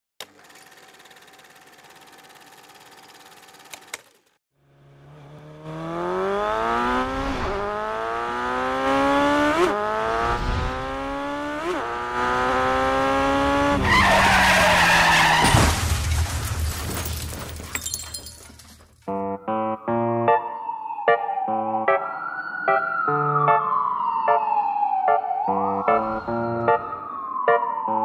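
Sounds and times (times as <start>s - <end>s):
car accelerating hard: 4.6s - 15.4s
tyres screeching: 13.8s - 15.7s.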